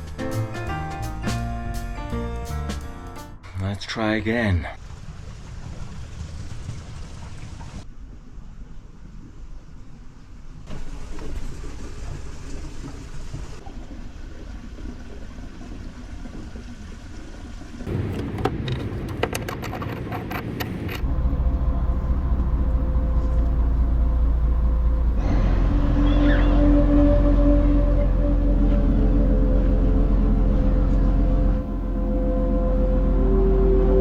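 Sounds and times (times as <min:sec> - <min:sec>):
music: 0:00.0 - 0:03.7, 0:22.4 - 0:34.0
boat engine droning: 0:21.0 - 0:34.0
low rumble: 0:21.0 - 0:34.0.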